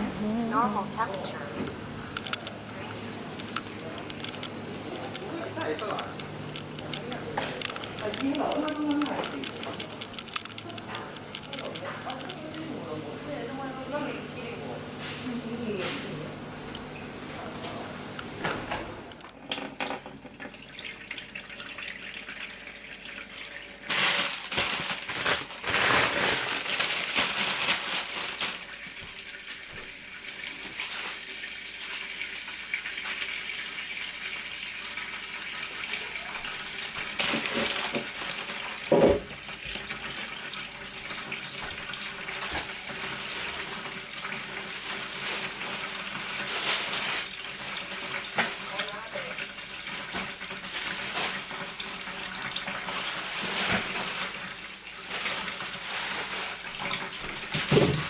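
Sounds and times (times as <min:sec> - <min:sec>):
tap water running into sink: 0:18.2 - 0:24.1, 0:28.3 - 0:58.0.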